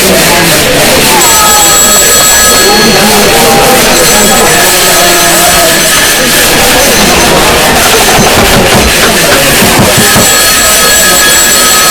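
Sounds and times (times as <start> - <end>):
overlapping background voices: 0.0 - 11.9
knocks and clicks: 5.9 - 10.9.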